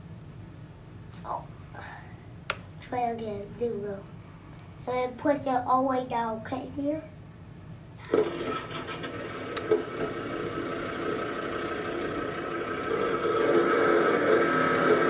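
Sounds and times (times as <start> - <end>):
diesel engine sound through small speaker: 8.0 - 15.0.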